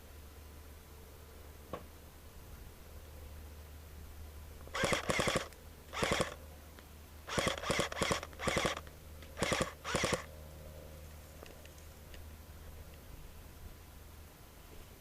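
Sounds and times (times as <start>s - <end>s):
airsoft gun firing bursts: 4.8s - 6.4s, 7.3s - 8.8s, 9.4s - 10.3s.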